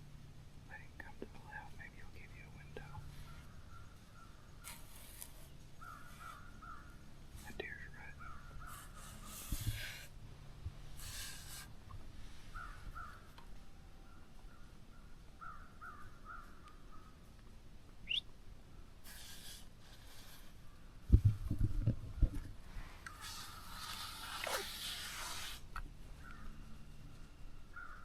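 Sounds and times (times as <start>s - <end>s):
faint crows cawing: 3.2s - 4.7s, 5.8s - 7.2s, 8.1s - 9.0s, 12.5s - 17.4s, 26.1s - 28.0s.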